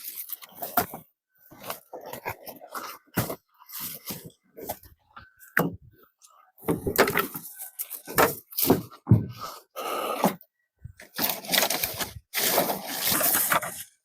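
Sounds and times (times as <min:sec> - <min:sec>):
brush scraping and rustling: 0:11.1 - 0:14.0.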